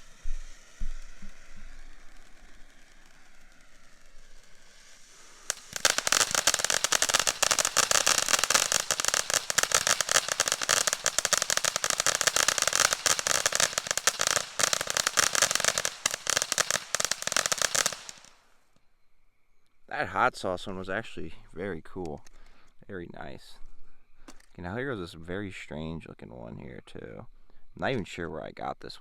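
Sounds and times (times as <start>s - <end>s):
firework crackling: 0.0s - 18.6s
fuse hiss: 0.0s - 18.6s.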